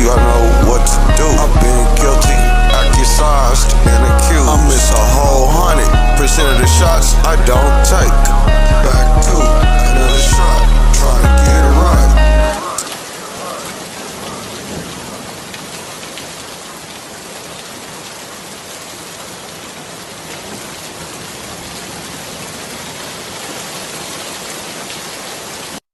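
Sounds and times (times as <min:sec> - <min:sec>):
steady rain falling: 0:12.6 - 0:25.8.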